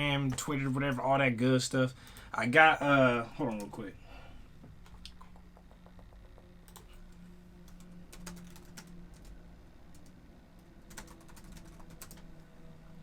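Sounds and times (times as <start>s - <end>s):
low steady hum: 0.0s - 13.0s
computer keyboard keystrokes: 7.7s - 10.2s, 10.9s - 12.4s.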